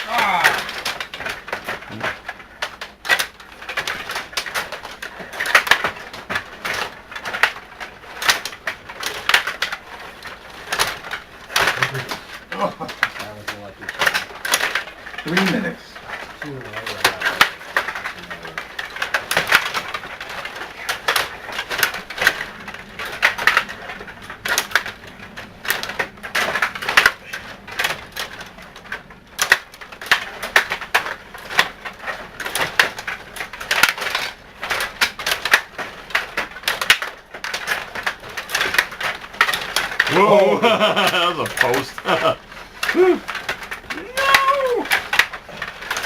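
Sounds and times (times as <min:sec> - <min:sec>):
game controls clicking and clacking: 0:00.0 - 0:46.0.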